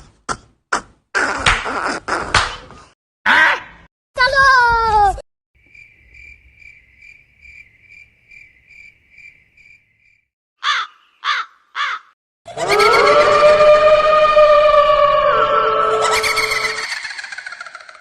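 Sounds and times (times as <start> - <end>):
cricket chirping: 5.6 - 10.3
crow cawing: 10.6 - 12.2.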